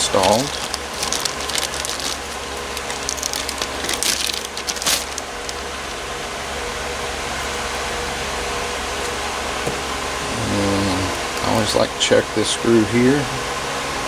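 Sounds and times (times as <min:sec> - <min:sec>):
parts clicking and rattling: 0:00.0 - 0:05.6
steady background hum: 0:00.0 - 0:14.0.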